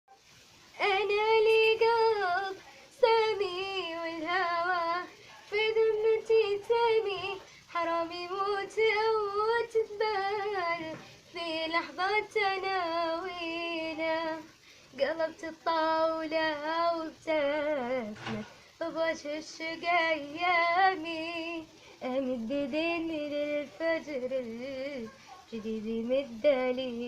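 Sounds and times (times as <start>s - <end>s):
woman singing with vibrato: 0.7s - 27.0s.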